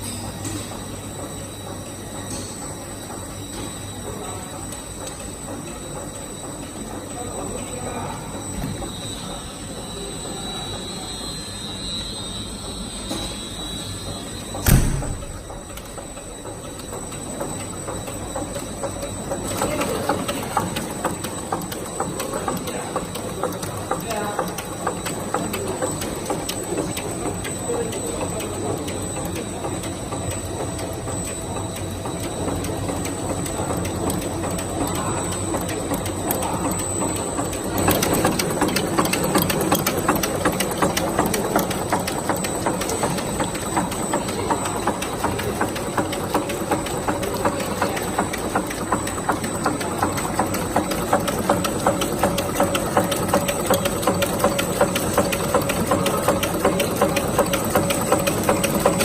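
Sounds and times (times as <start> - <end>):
machinery clattering: 14.4 - 59.0.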